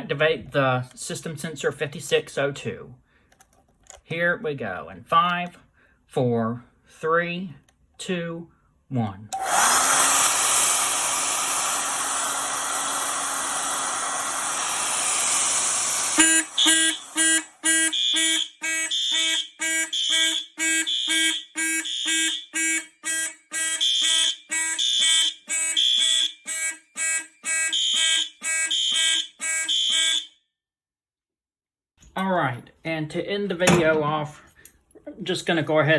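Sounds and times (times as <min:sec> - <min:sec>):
hot-air blower running: 0:09.4 - 0:17.6
fire alarm horns pulsing: 0:16.1 - 0:30.4.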